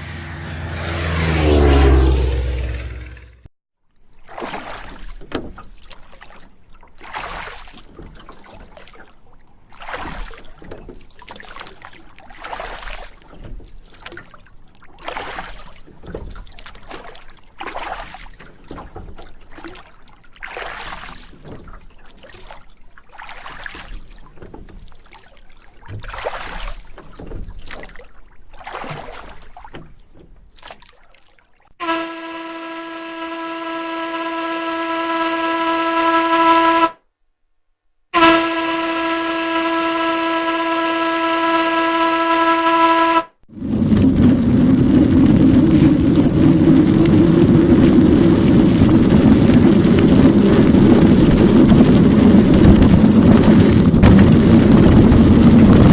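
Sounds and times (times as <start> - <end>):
water washing in swells: 0.0 - 3.4, 4.0 - 32.5, 43.5 - 55.9
loud steady horn blast: 0.0 - 3.5, 31.8 - 37.0, 38.2 - 43.4.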